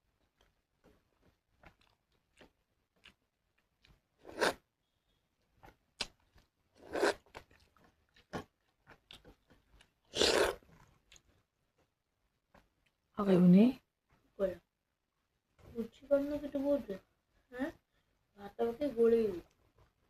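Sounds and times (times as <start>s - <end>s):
chewing with mouth clicks: 0.2s - 4.6s, 5.6s - 11.5s
loud mouthfuls: 10.1s - 10.6s.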